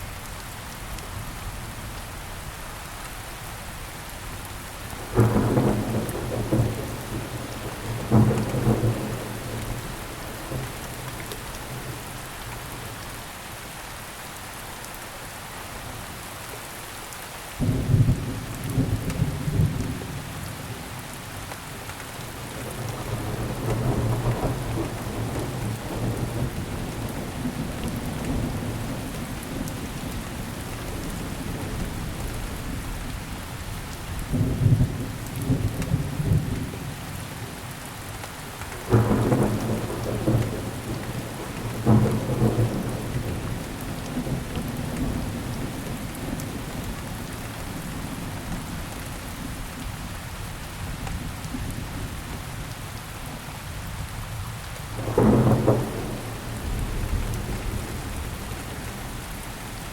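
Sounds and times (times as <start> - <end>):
steady rain: 0.0 - 59.9
thunder rolling: 38.9 - 46.4, 55.0 - 59.5.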